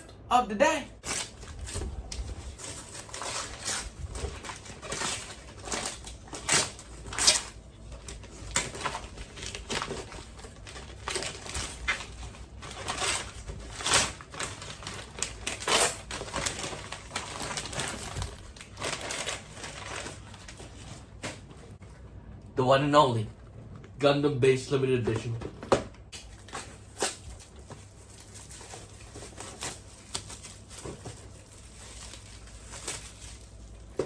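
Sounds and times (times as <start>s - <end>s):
packaging crinkling and rustling: 1.0s - 21.7s, 26.2s - 34.0s.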